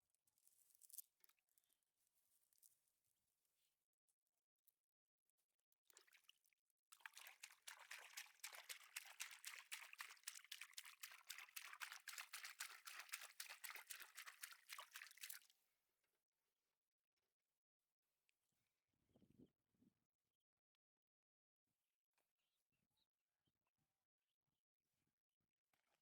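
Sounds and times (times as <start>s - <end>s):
water splashing and trickling: 5.9s - 15.5s.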